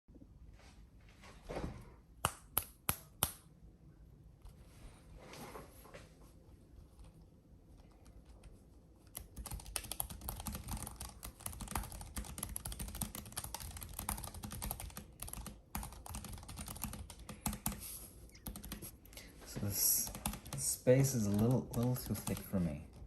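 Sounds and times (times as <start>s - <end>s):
mechanical keyboard typing: 9.0s - 17.8s, 18.4s - 18.9s, 20.0s - 20.6s, 21.2s - 22.7s.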